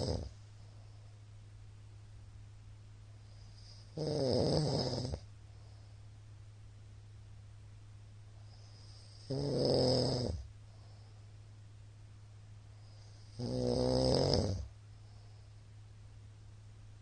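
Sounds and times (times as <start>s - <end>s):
man snoring: 0.0s - 0.3s, 3.6s - 5.2s, 8.7s - 10.4s, 13.0s - 14.7s.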